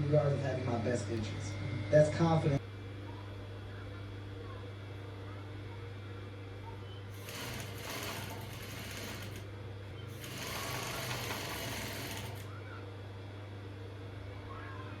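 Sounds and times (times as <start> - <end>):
steady low hum: 0.0 - 15.0
sewing machine stitching: 7.2 - 9.5, 10.1 - 12.5.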